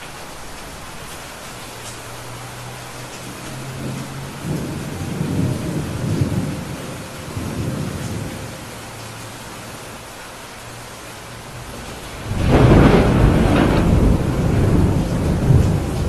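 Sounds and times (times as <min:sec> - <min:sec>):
steady rain hissing: 0:00.0 - 0:16.0
thunder rumbling: 0:03.2 - 0:08.8, 0:11.2 - 0:16.0.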